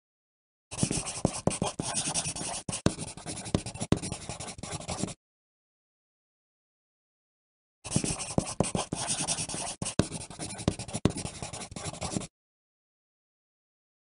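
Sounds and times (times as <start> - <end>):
pencil writing on paper: 0.7 - 5.2, 7.9 - 12.3.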